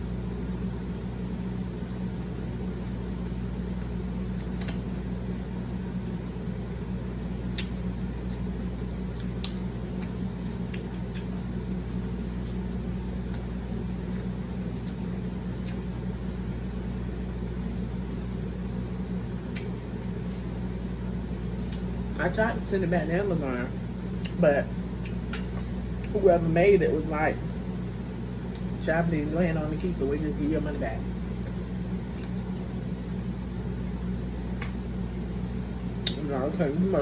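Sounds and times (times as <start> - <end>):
fan humming: 0.0 - 37.0
faint sharp eating clicks: 4.3 - 4.9, 7.5 - 8.5, 9.1 - 12.6, 24.1 - 24.4, 28.5 - 28.8, 31.4 - 33.2, 35.3 - 36.2.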